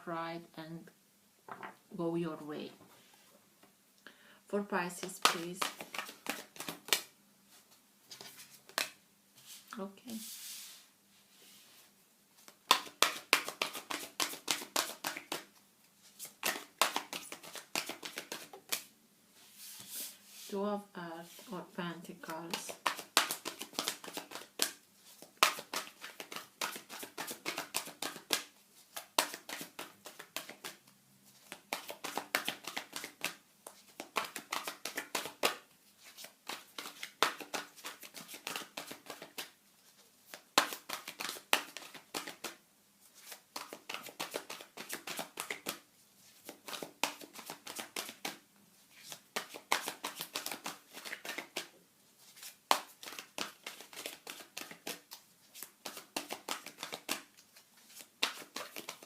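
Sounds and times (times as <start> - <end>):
cards being shuffled: 5.0 - 7.1, 8.1 - 10.8, 12.7 - 15.5, 16.1 - 18.9, 22.5 - 30.8, 31.4 - 39.5, 40.3 - 59.0.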